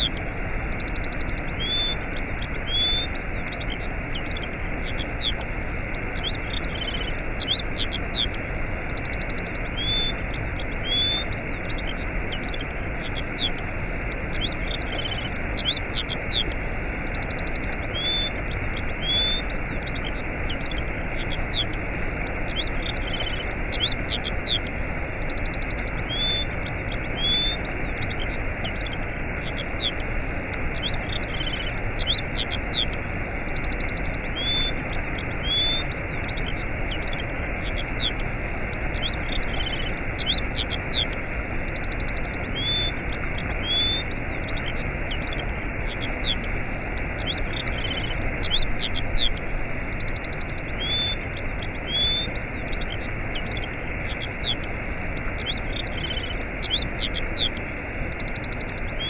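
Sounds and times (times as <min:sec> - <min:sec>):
small birds chirping: 0:00.0 - 0:59.0
waterfall rushing: 0:00.2 - 0:59.0.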